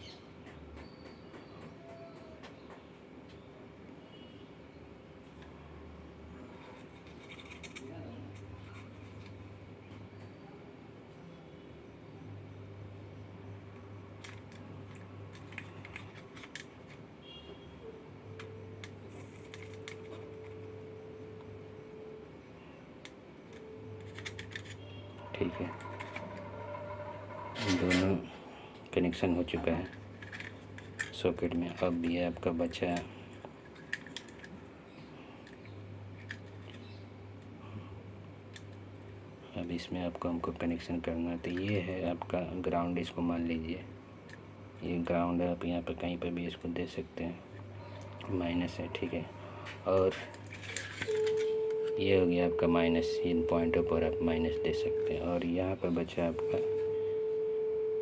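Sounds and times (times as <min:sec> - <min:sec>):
low electrical hum: 0:01.8 - 0:58.0
faint steady tone: 0:17.2 - 0:46.3, 0:47.3 - 0:58.0.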